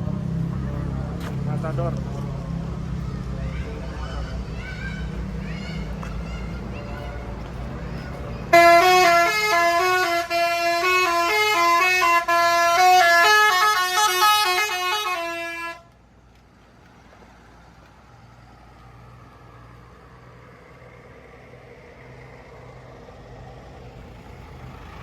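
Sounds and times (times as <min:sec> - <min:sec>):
low vehicle engine rumble: 0:00.0 - 0:25.0
musical bus horn melody: 0:08.5 - 0:15.9.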